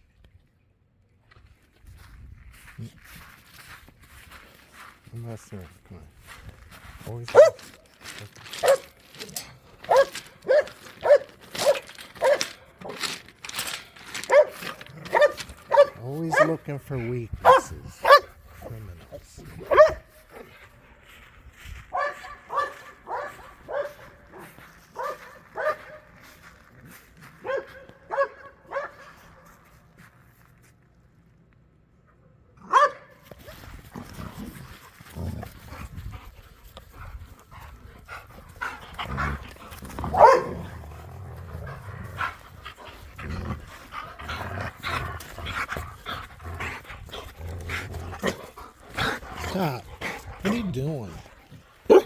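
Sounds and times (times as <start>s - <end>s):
rustling: 6.7s - 17.0s
dog barking: 7.3s - 7.7s, 8.6s - 9.0s, 9.9s - 13.0s, 14.2s - 16.6s, 17.4s - 18.4s, 19.6s - 20.5s, 21.9s - 26.1s, 27.4s - 29.2s, 32.6s - 33.2s, 40.1s - 40.6s.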